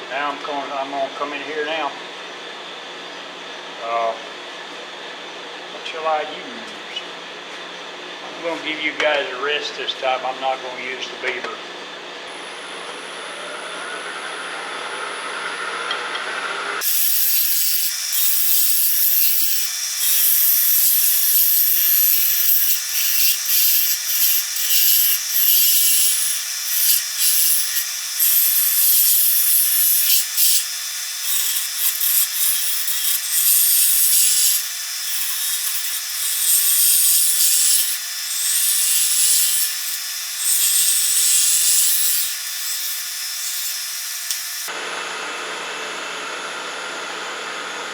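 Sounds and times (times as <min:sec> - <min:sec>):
wood lathe running: 0:12.3 - 0:44.8
turning tool scraping wood: 0:16.8 - 0:44.7.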